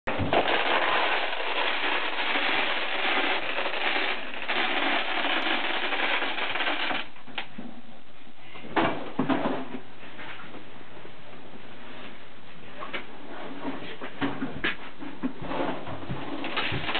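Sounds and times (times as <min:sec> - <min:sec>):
stones rattling as poured: 0:00.1 - 0:07.1, 0:16.4 - 0:16.9.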